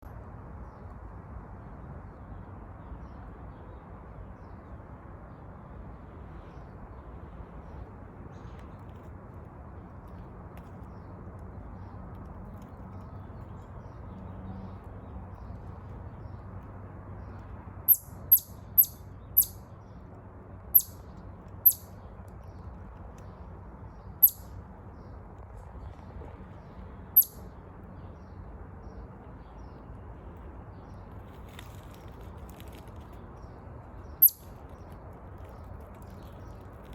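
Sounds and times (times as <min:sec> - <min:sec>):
faint steady rumble: 0:04.4 - 0:36.9
chipmunk chip calls: 0:17.3 - 0:19.8, 0:20.6 - 0:22.5, 0:23.9 - 0:25.1, 0:26.6 - 0:27.6, 0:33.4 - 0:36.9.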